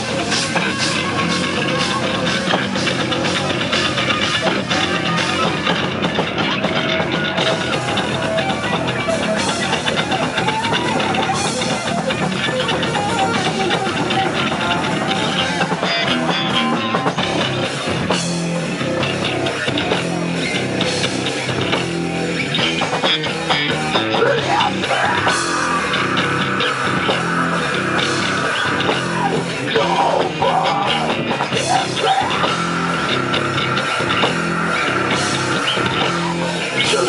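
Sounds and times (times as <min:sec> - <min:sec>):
heavy metal band playing live: 0:00.0 - 0:37.0
lead guitar bending notes: 0:00.0 - 0:37.0.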